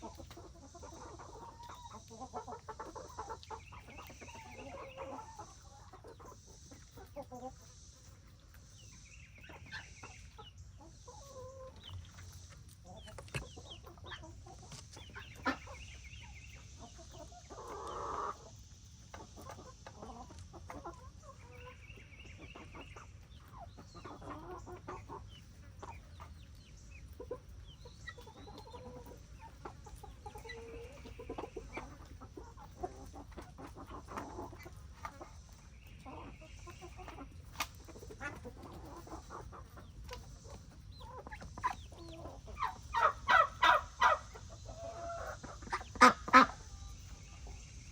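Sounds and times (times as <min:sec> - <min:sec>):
chickens clucking: 0:00.0 - 0:47.9
chicken drawn-out call: 0:36.0 - 0:47.6.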